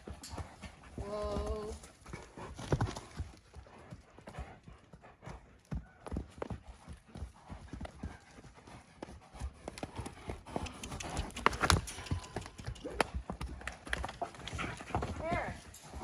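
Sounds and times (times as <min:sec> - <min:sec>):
horse hoofbeats: 0:00.0 - 0:16.0.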